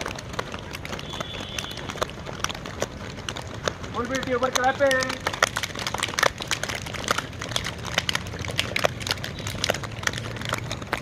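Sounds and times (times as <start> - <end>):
people clapping: 3.2 - 11.0.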